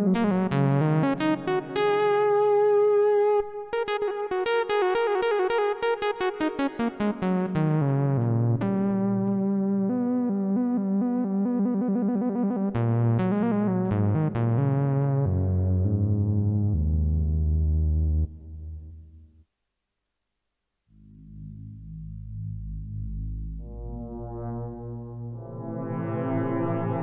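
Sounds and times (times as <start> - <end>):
low synth bass line: 0.0 - 4.2, 6.8 - 19.3, 21.0 - 27.0
synthesizer held notes: 0.0 - 18.9, 21.0 - 27.0
synthesizer short notes: 21.0 - 27.0.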